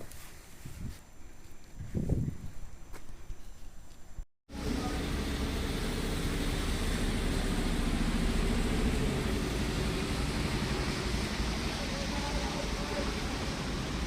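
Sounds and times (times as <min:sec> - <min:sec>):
engine rumble: 0:04.5 - 0:14.0.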